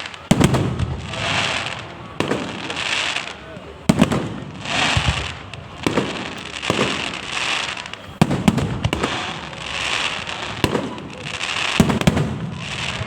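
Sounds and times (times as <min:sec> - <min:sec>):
fireworks bangs: 0:00.0 - 0:13.0
fireworks crackling hiss: 0:00.0 - 0:13.0.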